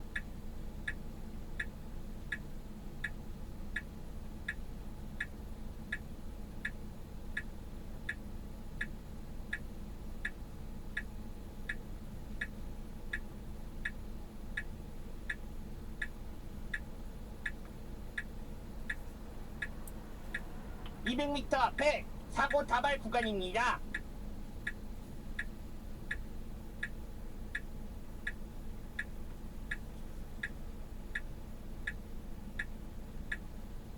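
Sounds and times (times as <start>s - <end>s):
low cabin hum: 3.4s - 33.9s
car turn signal ticking: 16.0s - 21.8s.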